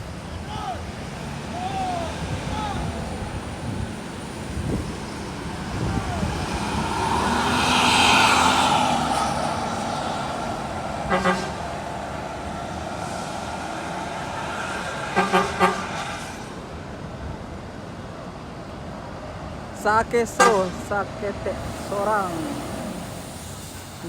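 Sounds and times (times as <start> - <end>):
bus passing by: 0.0 - 24.0
horn toots: 11.0 - 12.0, 15.1 - 16.3, 20.4 - 20.9.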